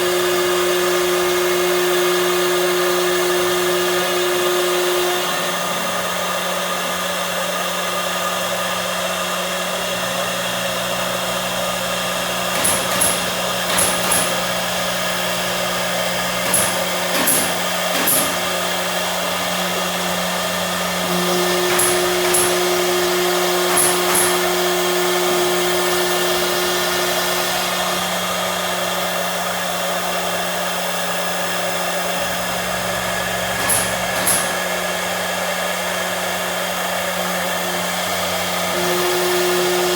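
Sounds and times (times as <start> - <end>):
machine motor whine: 0.0 - 39.9
short machine bursts: 11.4 - 28.5, 31.8 - 35.4, 38.7 - 39.9.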